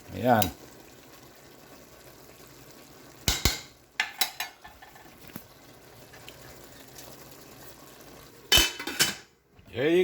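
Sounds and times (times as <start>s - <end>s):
metal utensil clinking on dishes: 4.0s - 4.9s, 8.5s - 9.3s.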